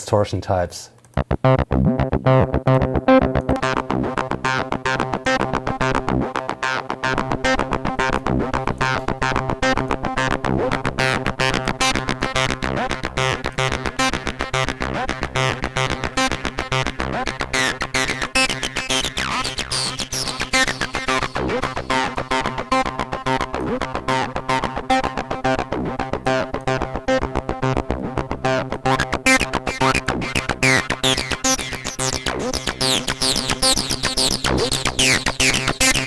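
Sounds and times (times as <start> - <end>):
distorted acid synth bassline: 1.2 - 36.0.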